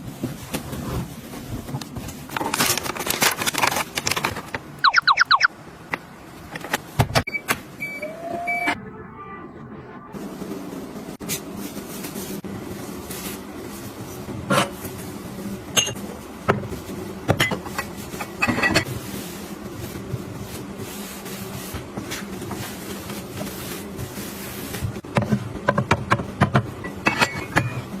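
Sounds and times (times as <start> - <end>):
steady low hum: 8.7 - 14.3.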